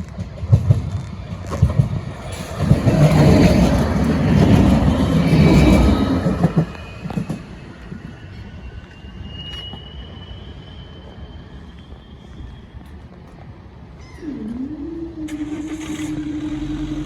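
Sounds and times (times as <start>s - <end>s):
train rumbling past: 0.0s - 17.0s
high wheel squeal: 2.2s - 14.6s.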